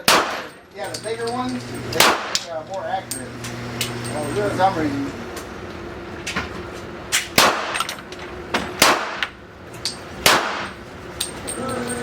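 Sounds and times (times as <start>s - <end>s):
distant gunshots: 0.0s - 0.5s, 2.0s - 2.4s, 7.4s - 7.8s, 8.8s - 9.2s, 10.2s - 10.8s
pistol shots with echo: 0.0s - 0.6s, 1.9s - 2.5s, 7.3s - 7.8s, 8.8s - 9.2s, 10.2s - 10.8s.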